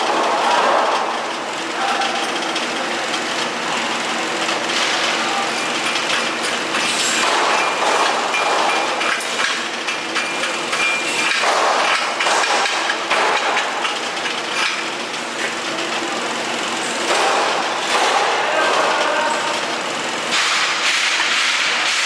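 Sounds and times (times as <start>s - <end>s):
machine hum: 0.0s - 22.0s
metal knocks and clinks: 5.6s - 15.6s.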